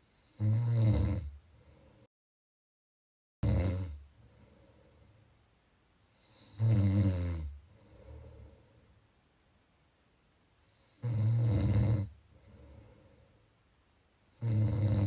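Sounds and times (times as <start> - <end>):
person snoring: 0.2 - 1.3, 3.4 - 4.0, 6.2 - 8.6, 10.9 - 13.0, 14.4 - 15.0.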